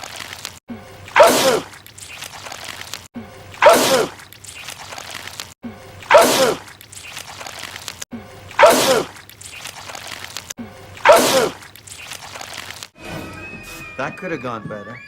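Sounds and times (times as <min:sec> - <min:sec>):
man sneezing: 0:01.2 - 0:01.7, 0:03.6 - 0:04.2, 0:06.1 - 0:06.6, 0:08.6 - 0:09.1, 0:11.0 - 0:11.6.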